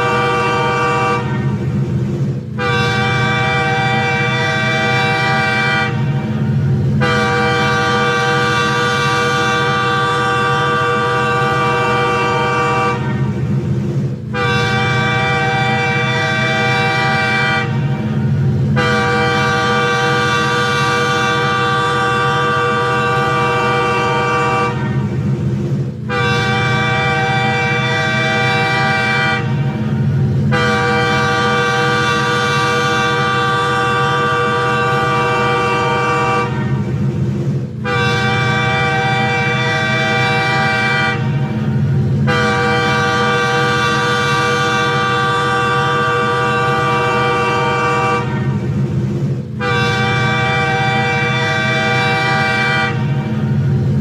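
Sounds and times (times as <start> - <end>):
train horn blasts: 0.0 - 13.6, 14.2 - 54.0
steady low rumble: 28.8 - 31.4.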